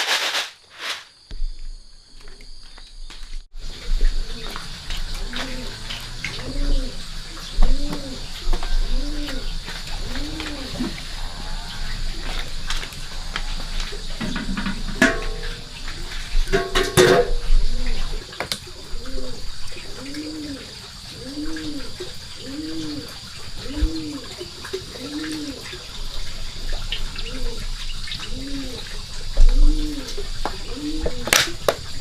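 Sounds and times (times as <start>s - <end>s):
bird cooing: 3.7s - 15.7s, 17.0s - 26.0s, 27.1s - 31.6s.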